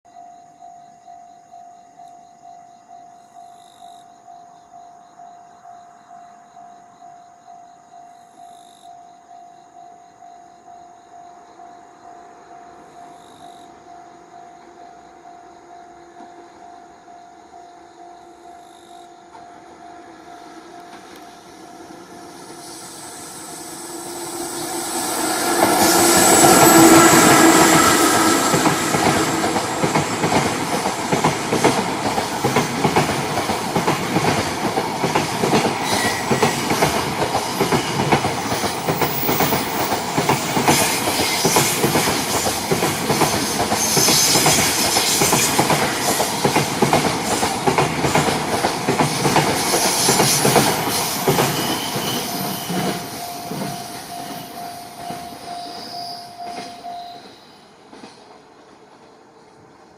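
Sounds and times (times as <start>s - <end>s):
electric locomotive passing: 9.6s - 59.9s
freight wagon wheels clickety-clack: 25.6s - 58.8s.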